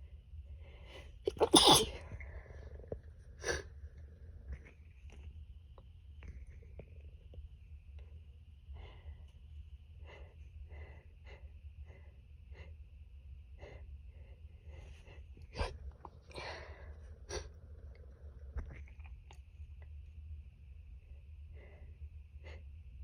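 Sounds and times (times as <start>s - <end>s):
snorts: 1.3s - 1.9s
person sneezing: 1.3s - 2.0s.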